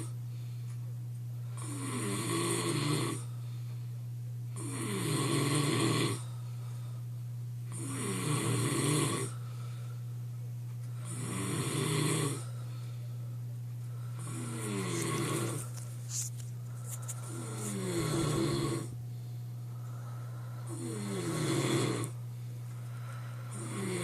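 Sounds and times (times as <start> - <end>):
steady low hum: 0.0 - 24.0
man snoring: 1.6 - 3.3, 4.6 - 6.3, 7.7 - 9.4, 11.0 - 12.5, 14.2 - 15.7, 17.2 - 19.0, 20.6 - 22.2, 23.5 - 24.0.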